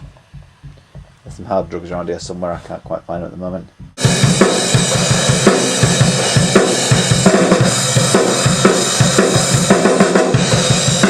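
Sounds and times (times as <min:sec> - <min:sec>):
bass drum: 0:00.0 - 0:11.0
snare drum strikes: 0:03.8 - 0:11.0
cymbal wash: 0:04.0 - 0:11.0.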